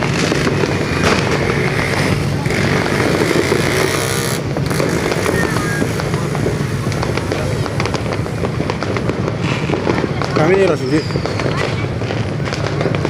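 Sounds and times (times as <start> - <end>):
motorcycle engines running: 0.0 - 10.4
firecracker pops: 0.0 - 13.0.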